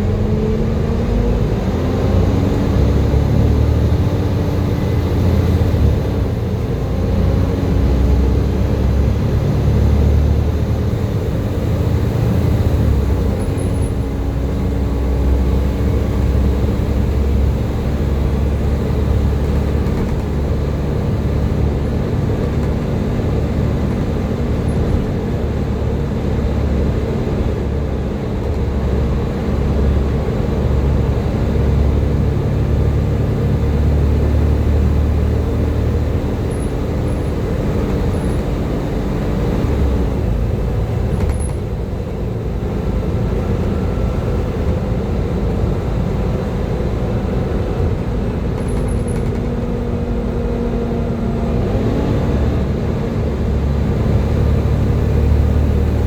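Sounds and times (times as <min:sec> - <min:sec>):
bus engine drone with whine: 0:00.0 - 0:56.0.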